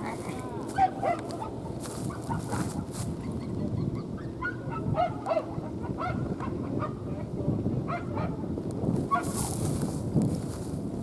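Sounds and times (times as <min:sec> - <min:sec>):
low background noise: 0:00.0 - 0:11.0.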